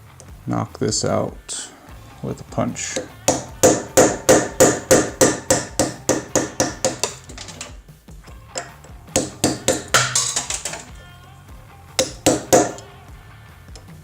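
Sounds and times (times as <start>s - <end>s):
hammer striking metal punch: 2.9s - 7.8s, 8.6s - 10.9s, 12.0s - 12.9s.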